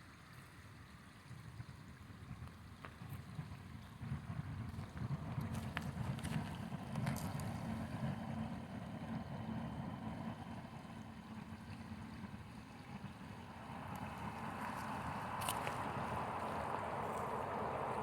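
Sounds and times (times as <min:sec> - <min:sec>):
river water flowing: 0:05.3 - 0:18.0.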